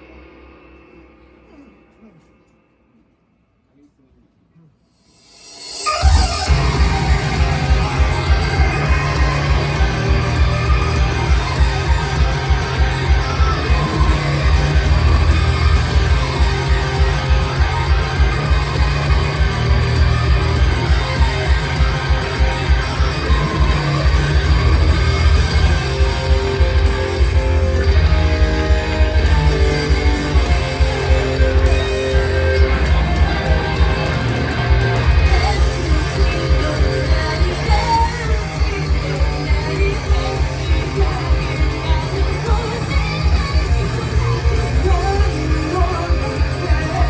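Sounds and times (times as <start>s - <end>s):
rock music with guitar: 5.4s - 47.0s
person singing: 28.7s - 47.0s.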